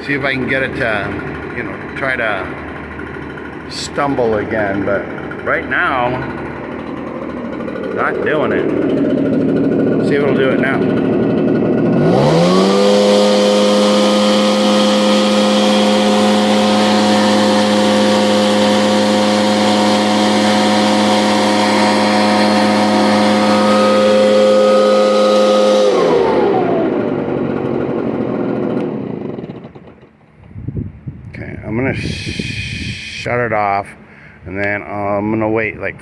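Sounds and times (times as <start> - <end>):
leaf blower engine revving: 0.0 - 30.5, 32.0 - 33.2
rush of air: 31.9 - 33.2.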